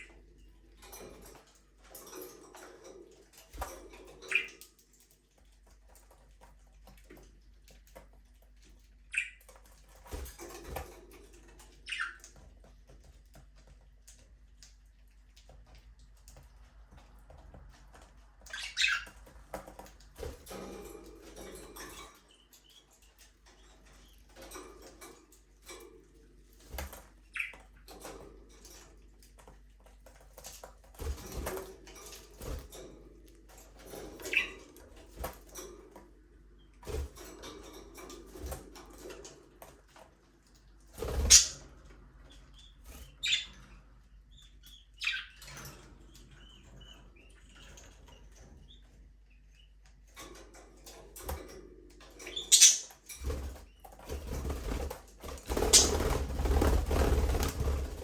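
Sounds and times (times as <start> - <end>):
birds rustling in cage: 0.0 - 58.0
budgerigars chirping: 18.5 - 19.2, 41.3 - 41.6, 42.5 - 43.6, 44.3 - 45.4, 52.3 - 52.9.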